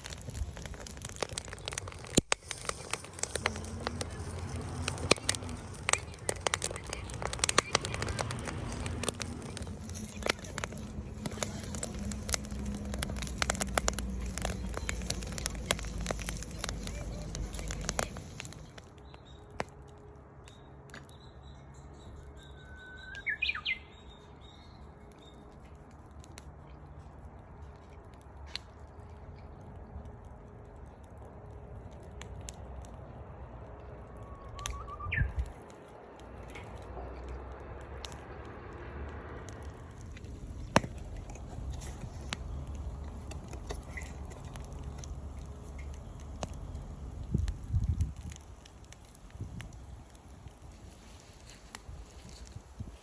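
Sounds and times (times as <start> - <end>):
wood fire crackling: 0.0 - 21.6, 23.0 - 53.0
bird whistle call: 22.4 - 23.9, 34.2 - 35.4.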